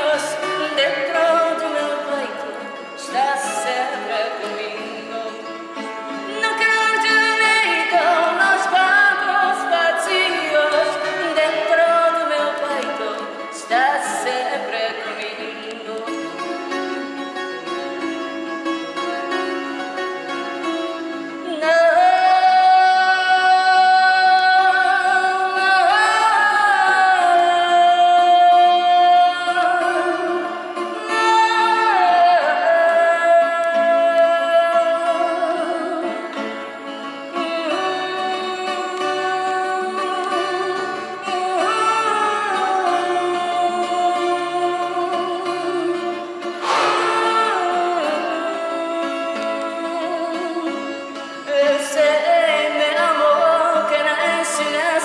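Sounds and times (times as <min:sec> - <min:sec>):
woman singing with vibrato: 0:00.0 - 0:16.8, 0:21.4 - 0:55.0
plucked guitars: 0:00.0 - 0:55.0.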